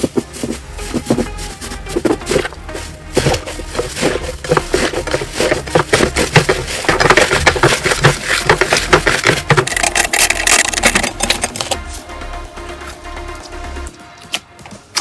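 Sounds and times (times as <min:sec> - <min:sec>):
crunchy slime crackling: 0:00.0 - 0:11.9.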